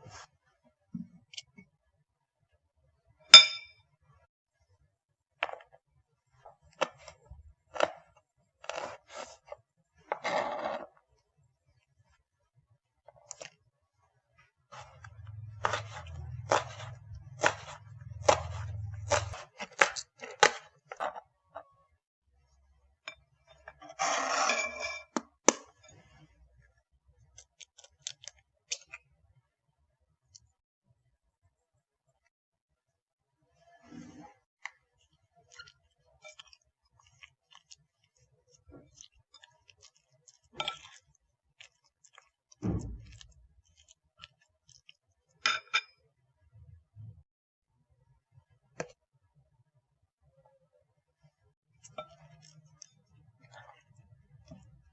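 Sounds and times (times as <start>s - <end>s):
utensil scrapes: 23.7s - 25.1s.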